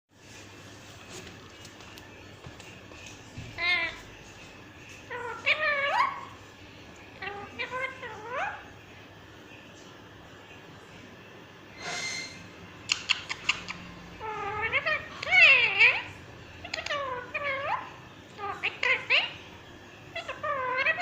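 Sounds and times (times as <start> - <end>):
parakeet wavering cries: 3.4 - 4.1, 5.0 - 6.4, 7.1 - 8.7, 13.3 - 19.5, 20.1 - 21.0.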